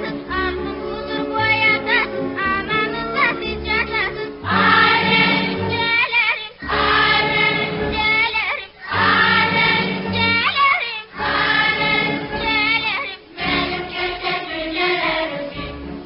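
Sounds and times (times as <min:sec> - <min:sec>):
voices singing together: 0:00.0 - 0:16.0.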